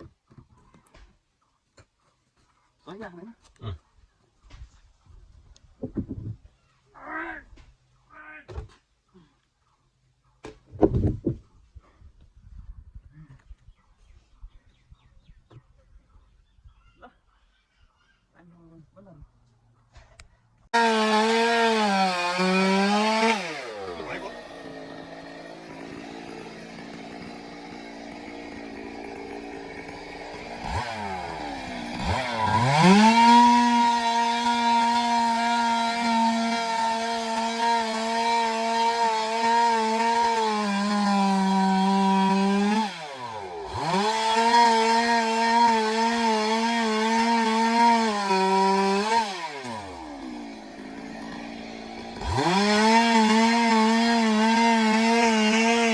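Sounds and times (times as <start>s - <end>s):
chainsaw cutting timber: 20.7s - 55.9s.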